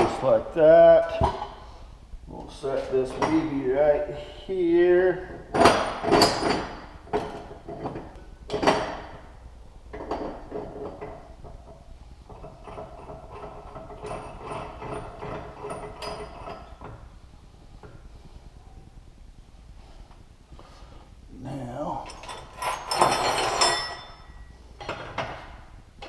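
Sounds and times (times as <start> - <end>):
metal tool clinks: 22.0 - 24.5.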